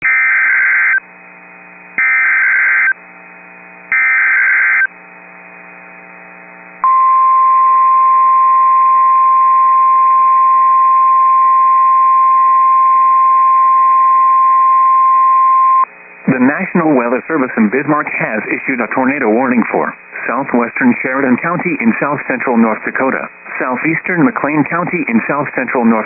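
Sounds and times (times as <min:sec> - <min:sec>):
steady high alarm tone: 0:02.0 - 0:03.0, 0:03.9 - 0:04.9.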